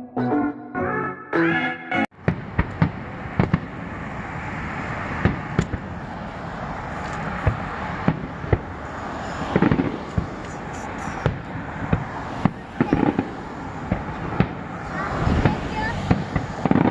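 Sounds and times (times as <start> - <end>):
crackling fireworks pops: 2.2 - 3.8, 5.2 - 5.9, 7.0 - 8.7, 9.5 - 14.6, 15.3 - 16.9
fireworks bangs: 2.2 - 16.9.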